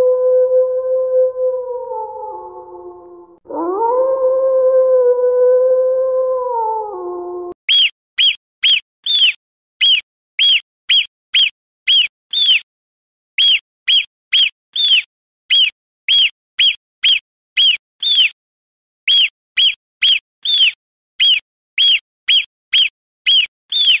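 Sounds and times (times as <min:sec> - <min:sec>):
marmot whistled alarm chirps: 0:07.7 - 0:12.7, 0:13.4 - 0:18.4, 0:19.1 - 0:24.0.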